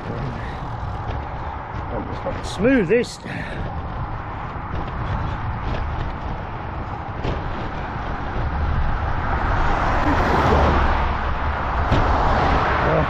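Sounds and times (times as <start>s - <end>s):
bicycle tyres on rough road: 0.0s - 13.0s
wind on microphone: 0.0s - 13.0s.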